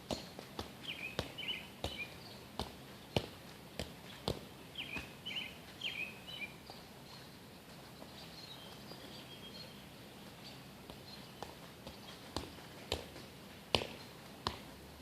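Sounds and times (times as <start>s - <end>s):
steady outdoor hiss: 0.0s - 15.0s
small bird chirping: 0.2s - 3.4s, 4.0s - 12.4s.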